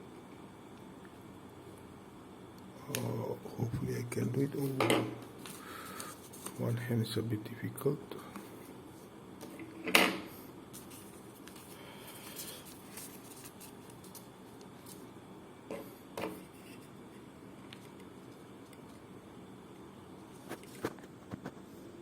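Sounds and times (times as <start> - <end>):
paper rustling: 5.4 - 6.7, 10.7 - 15.1, 20.3 - 21.5.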